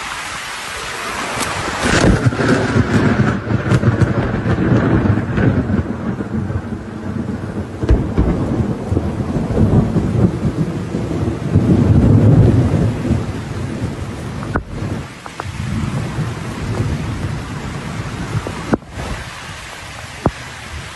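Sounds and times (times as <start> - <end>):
rain: 0.0 - 20.9
thunder rumbling: 1.6 - 20.9
sharp thunder crack: 1.8 - 15.0.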